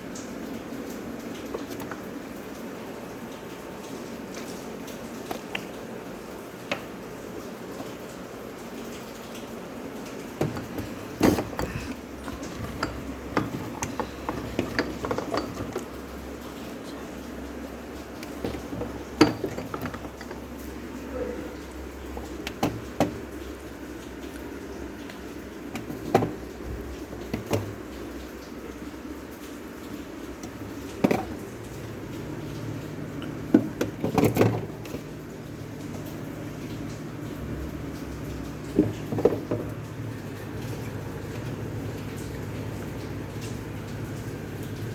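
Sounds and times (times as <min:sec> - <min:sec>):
fridge low hum: 0:00.0 - 0:44.9
containers clicking and knocking: 0:01.3 - 0:02.5, 0:10.0 - 0:16.6, 0:18.0 - 0:23.6, 0:24.2 - 0:28.1, 0:30.3 - 0:31.8, 0:33.2 - 0:35.2, 0:38.6 - 0:40.0.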